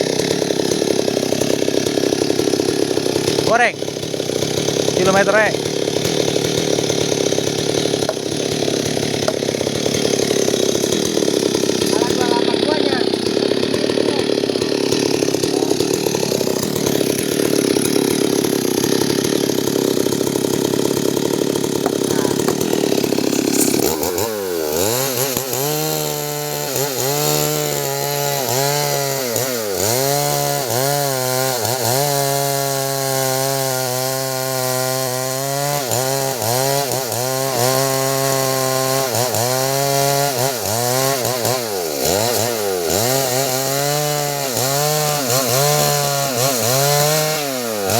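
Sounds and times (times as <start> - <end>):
chainsaw cutting wood: 0.0 - 47.9.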